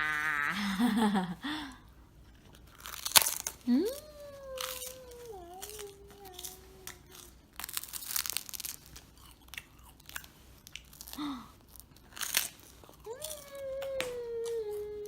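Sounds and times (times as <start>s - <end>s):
person chewing crunchy food: 2.2s - 13.4s.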